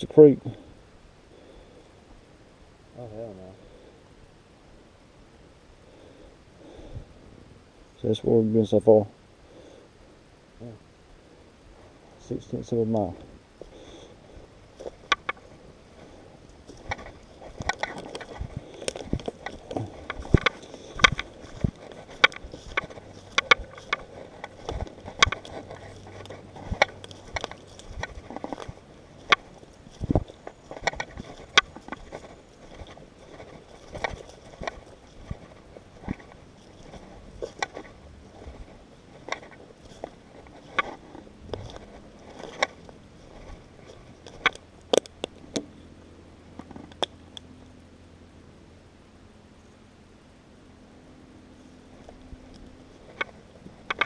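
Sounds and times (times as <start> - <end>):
footsteps on trail: 12.7 - 45.7
twigs snapping: 14.7 - 45.7, 52.0 - 54.0.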